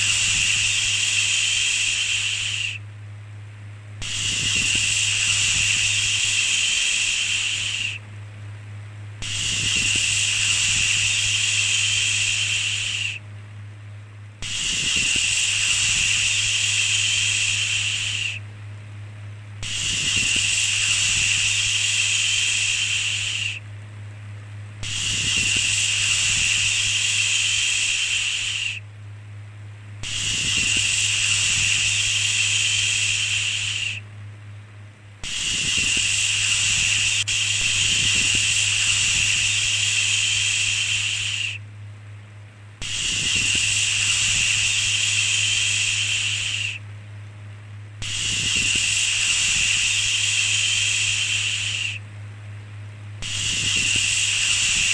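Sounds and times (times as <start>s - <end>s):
person shushing: 4.0s - 8.0s, 24.8s - 28.8s, 35.2s - 41.6s, 42.8s - 46.8s, 48.0s - 52.0s.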